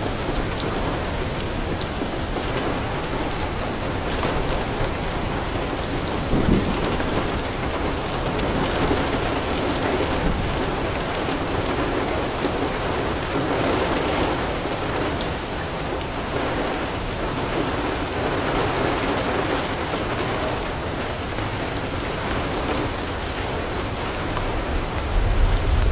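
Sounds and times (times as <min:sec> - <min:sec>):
heavy rain on a roof: 0:00.0 - 0:25.9
low thunder rumble: 0:04.2 - 0:13.2, 0:24.4 - 0:25.9.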